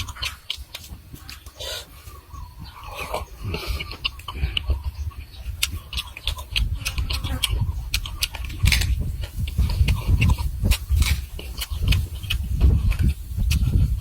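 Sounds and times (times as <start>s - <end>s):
chewing and mouth smacking: 0.0s - 1.6s, 2.8s - 14.0s.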